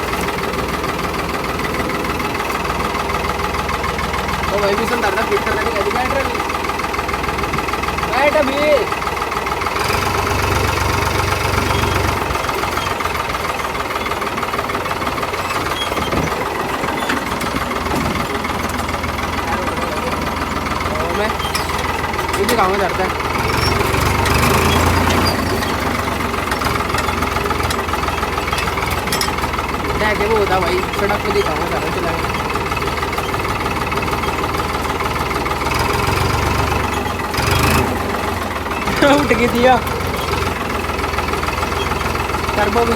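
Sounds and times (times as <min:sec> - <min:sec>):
diesel tractor engine idling: 0:00.0 - 0:42.9.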